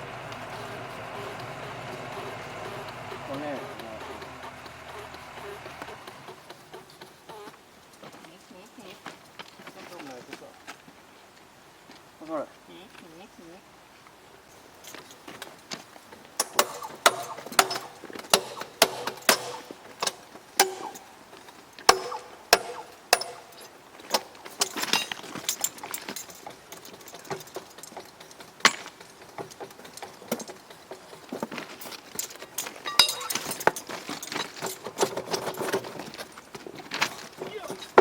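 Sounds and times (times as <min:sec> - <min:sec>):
hand tools clinking on steel: 0:14.5 - 0:38.0.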